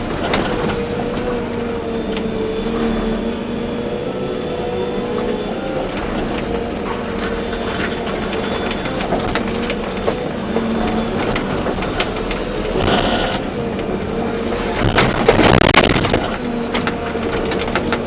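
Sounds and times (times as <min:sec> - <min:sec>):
diesel engine running under load: 0:00.0 - 0:18.0
hydraulics hissing: 0:09.8 - 0:17.5
sharp clicks and knocks: 0:14.2 - 0:18.0.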